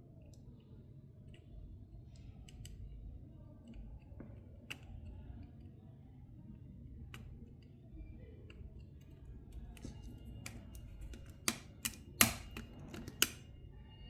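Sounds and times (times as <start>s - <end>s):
plastic phone parts clicking: 8.8s - 13.5s.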